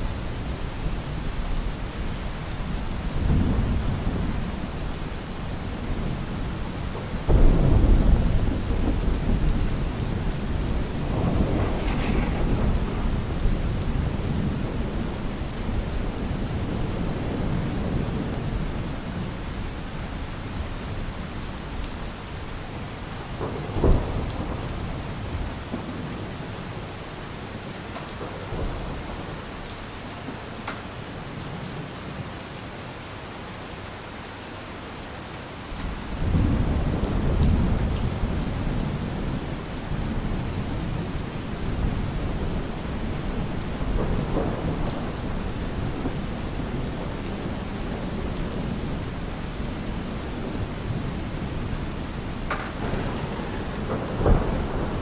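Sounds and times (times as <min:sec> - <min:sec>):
rolling thunder: 0:00.0 - 0:19.4, 0:21.0 - 0:26.8, 0:35.8 - 0:55.0
steady rain: 0:00.0 - 0:55.0
sharp thunderclap: 0:07.1 - 0:18.8, 0:23.4 - 0:26.3, 0:35.8 - 0:39.4, 0:40.0 - 0:48.8, 0:52.1 - 0:55.0.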